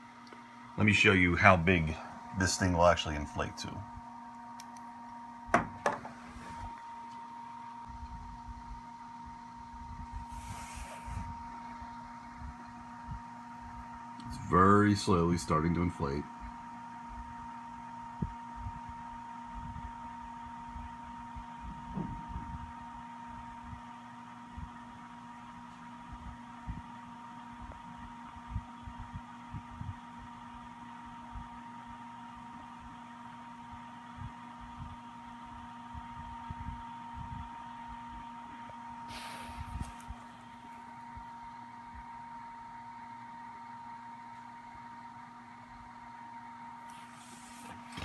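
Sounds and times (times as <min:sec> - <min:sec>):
electric air pump humming: 0:00.0 - 0:48.0
brief hiss: 0:10.3 - 0:11.2, 0:39.1 - 0:40.0.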